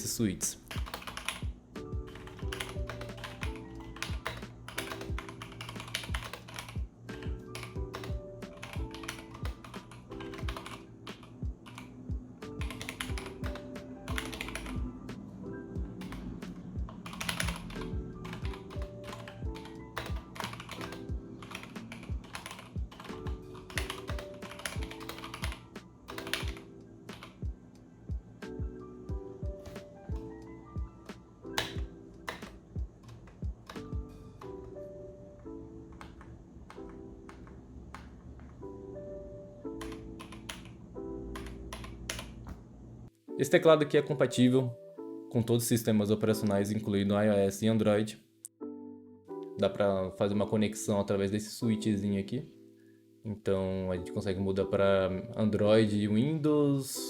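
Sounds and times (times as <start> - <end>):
chill hip-hop music: 0.0 - 36.0
mechanical keyboard typing: 0.7 - 12.0, 12.6 - 14.8, 16.0 - 27.4, 31.5 - 34.8, 35.9 - 38.6, 39.8 - 42.5.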